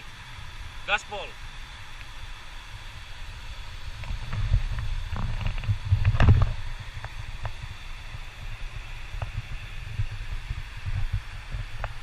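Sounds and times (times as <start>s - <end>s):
motorcycle rumble: 1.6s - 12.0s
wind on microphone: 2.7s - 12.0s.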